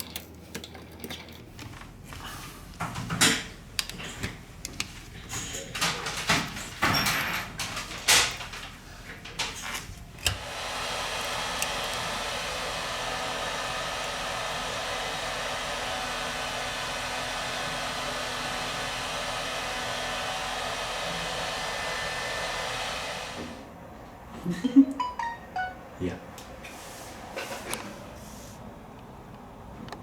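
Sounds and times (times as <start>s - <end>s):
hot-air blower running: 2.0s - 24.3s.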